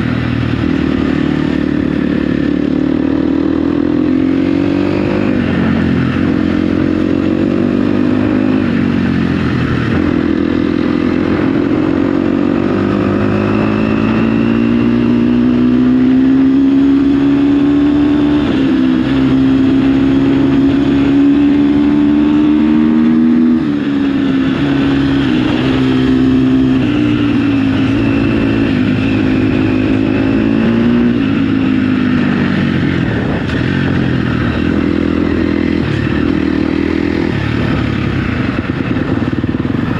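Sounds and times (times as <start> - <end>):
dirt bike engine revving: 34.4 - 39.9.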